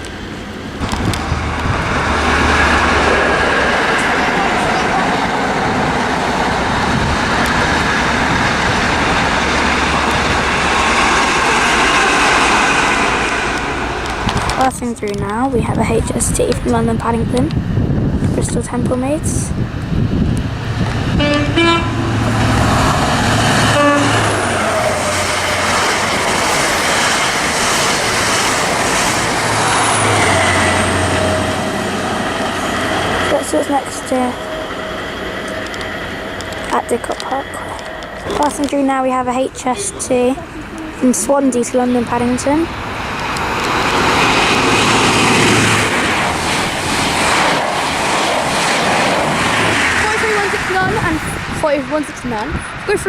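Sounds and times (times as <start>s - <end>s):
diesel locomotive drone: 0.0s - 53.0s
rush of passing train: 0.0s - 53.0s
train horn blast: 21.1s - 25.9s.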